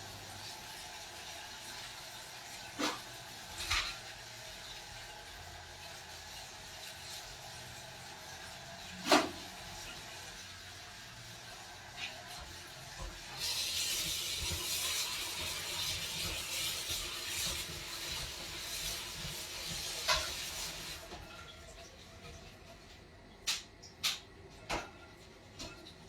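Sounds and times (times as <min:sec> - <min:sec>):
food sizzling in a pan: 0:00.0 - 0:22.9.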